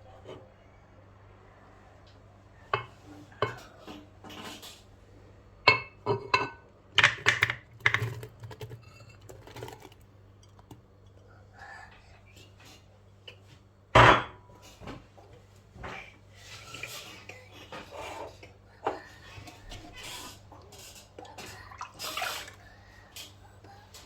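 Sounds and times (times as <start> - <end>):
dishes clinking and knocking: 2.7 - 4.8, 5.6 - 10.0, 14.0 - 15.0.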